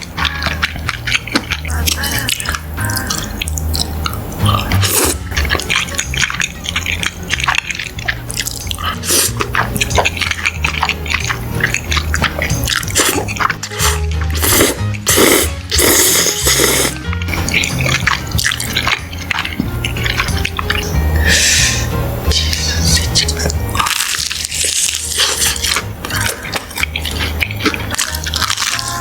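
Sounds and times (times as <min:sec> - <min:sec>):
background music with bass line: 0:00.0 - 0:29.0
wet chewing and slurping: 0:00.0 - 0:29.0.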